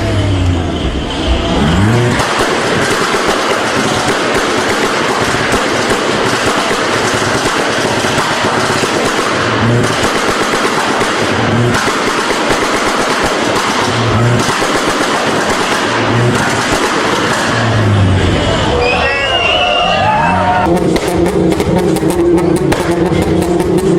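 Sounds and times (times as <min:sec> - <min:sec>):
deep low pulse: 0:00.0 - 0:02.2
car exhaust popping and banging: 0:00.0 - 0:18.3, 0:20.6 - 0:23.9.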